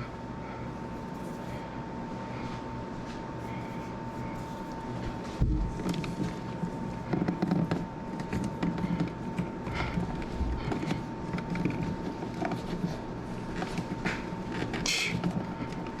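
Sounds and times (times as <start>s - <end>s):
faint steady whine: 0.0s - 16.0s
clicks scrapes and creaks: 7.0s - 16.0s.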